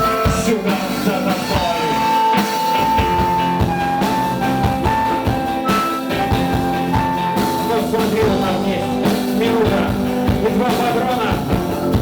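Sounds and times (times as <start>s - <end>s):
rock band playing: 0.0s - 12.0s
steady drum beat: 0.0s - 12.0s.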